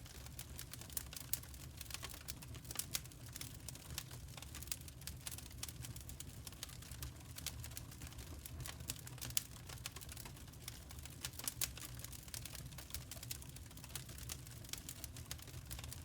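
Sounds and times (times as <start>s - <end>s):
low fire rumble: 0.0s - 16.0s
wood fire crackling and popping: 0.0s - 16.0s.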